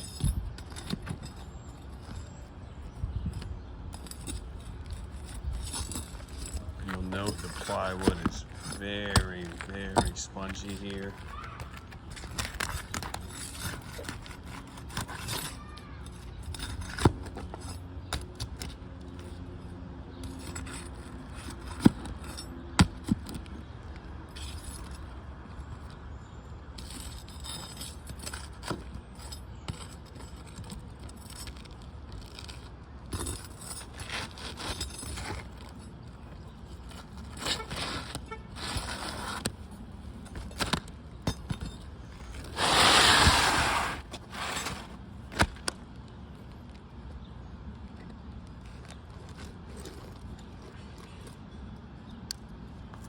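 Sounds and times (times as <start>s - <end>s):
scraping and rustling: 0.0s - 18.3s, 26.8s - 45.7s
tools clinking: 0.0s - 23.6s, 26.7s - 39.5s.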